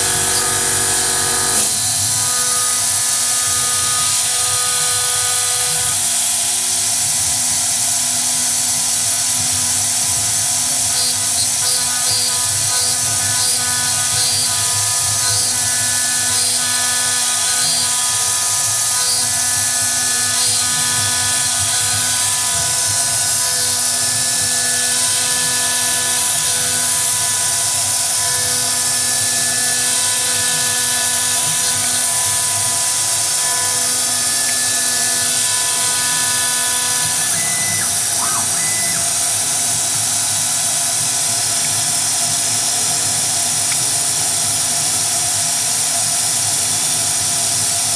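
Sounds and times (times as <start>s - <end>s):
machine tones: 0.0s - 4.9s, 36.5s - 39.4s
router spindle whine: 0.0s - 47.9s.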